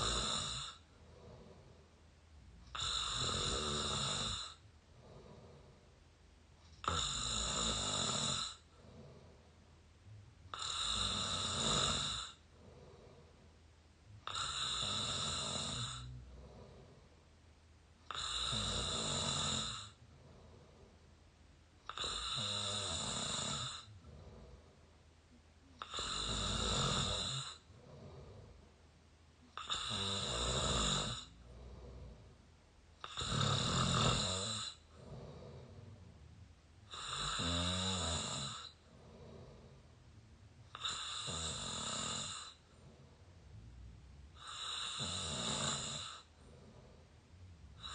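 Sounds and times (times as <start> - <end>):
person snoring: 0.0 - 1.8, 2.7 - 5.8, 6.8 - 9.4, 10.5 - 13.4, 14.2 - 17.1, 18.1 - 20.9, 21.9 - 24.8, 25.8 - 28.6, 29.6 - 32.4, 33.0 - 36.2, 36.9 - 39.8, 40.7 - 43.2, 44.3 - 47.0, 47.7 - 47.9
soft breathing: 0.0 - 2.8, 4.4 - 6.8, 8.5 - 10.3, 12.2 - 14.2, 15.8 - 17.4, 19.8 - 21.2, 23.7 - 25.0, 27.5 - 28.9, 31.1 - 33.2, 34.7 - 37.3, 38.5 - 41.4, 42.2 - 45.1, 46.0 - 47.9.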